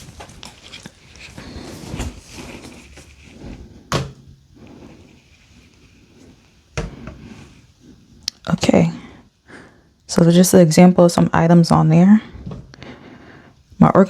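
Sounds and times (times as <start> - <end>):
rustling of small objects: 0.0 - 3.8.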